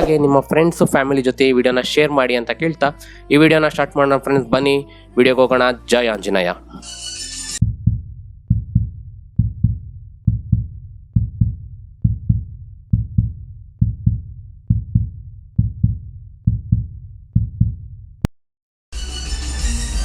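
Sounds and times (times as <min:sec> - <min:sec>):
heartbeat thumps: 0:07.6 - 0:18.3.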